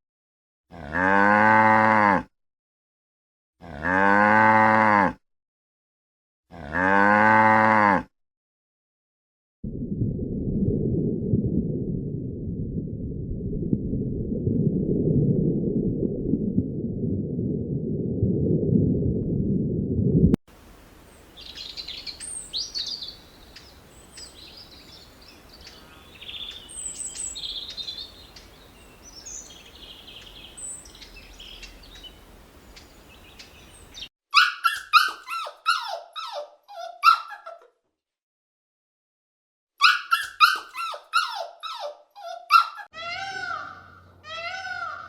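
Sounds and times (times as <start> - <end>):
animal yelps: 34.3 - 37.7, 39.8 - 45.0
animal chirps and squeaks: 34.4 - 37.6, 39.8 - 45.0.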